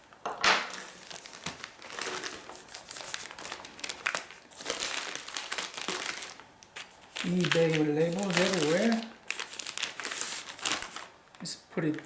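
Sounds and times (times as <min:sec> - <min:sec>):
packaging crinkling and rustling: 0:00.0 - 0:12.0.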